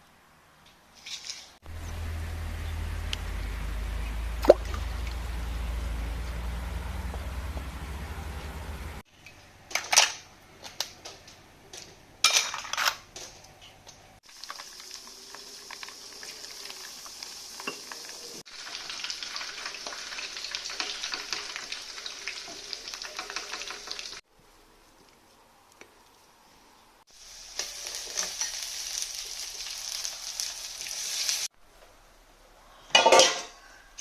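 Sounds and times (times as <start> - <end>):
metal utensils clanking on pan: 11.0 - 13.4, 22.4 - 24.2, 32.9 - 33.6
food sizzling in a pan: 14.2 - 24.2, 27.1 - 31.5.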